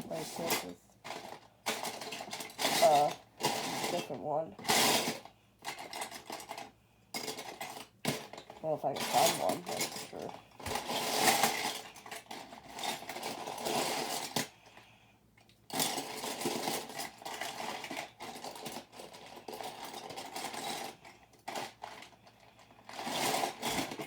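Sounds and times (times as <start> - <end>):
plastic bricks rattling: 15.7 - 24.0.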